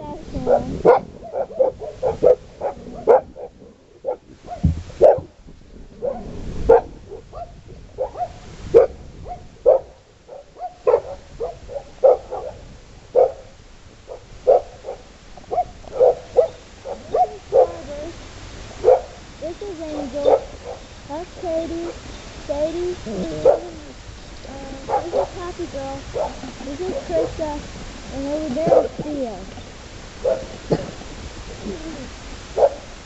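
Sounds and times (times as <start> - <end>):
dogs barking: 0.4 - 5.3, 6.0 - 18.0, 18.8 - 20.9, 23.0 - 23.9, 24.8 - 27.6, 28.6 - 29.1, 30.2 - 30.9, 32.5 - 32.9.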